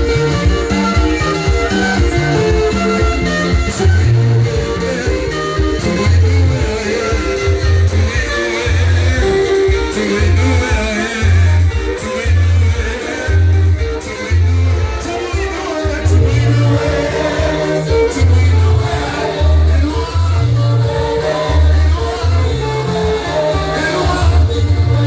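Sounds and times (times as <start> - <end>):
band playing: 0.0 - 25.0
people singing: 0.0 - 25.0.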